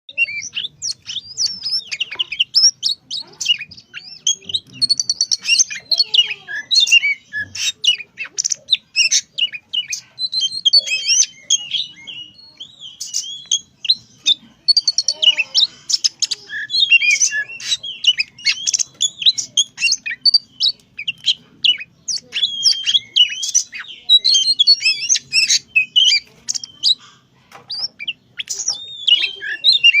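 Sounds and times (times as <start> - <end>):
bird singing whistles and chatter: 0.1 - 30.0.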